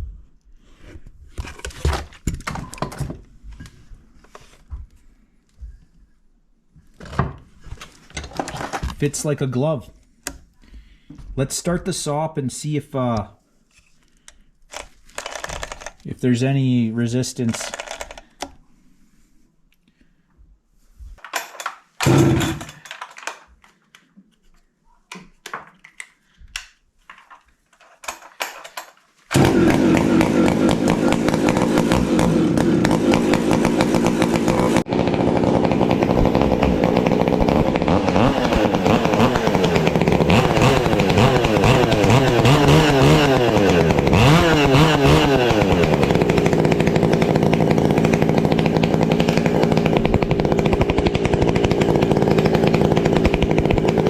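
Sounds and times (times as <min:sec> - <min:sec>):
knocks and handling noises: 0:00.9 - 0:06.0, 0:06.7 - 0:09.1, 0:17.5 - 0:18.6, 0:21.0 - 0:29.3
chainsaw revving: 0:22.0 - 0:22.8, 0:29.3 - 0:54.0.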